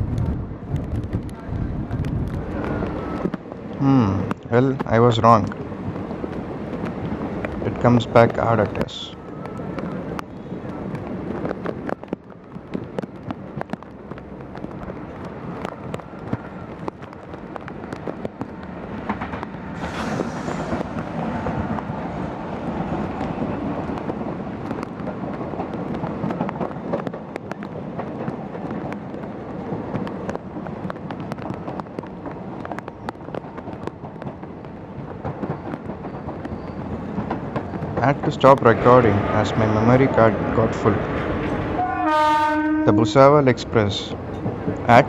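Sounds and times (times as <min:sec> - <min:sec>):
wheels clattering on track: 0:00.0 - 0:42.1, 0:43.4 - 0:45.0
train rumble: 0:00.0 - 0:45.0
rush of noise: 0:19.8 - 0:22.4.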